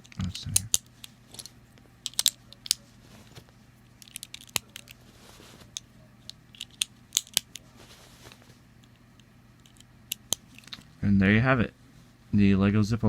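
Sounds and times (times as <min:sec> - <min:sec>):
plastic bricks clicking together: 0:02.0 - 0:02.8.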